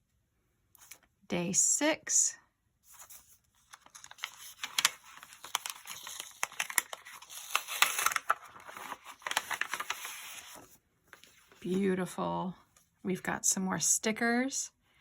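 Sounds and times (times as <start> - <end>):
paper wrapping tearing and crumpling: 3.0 - 10.7.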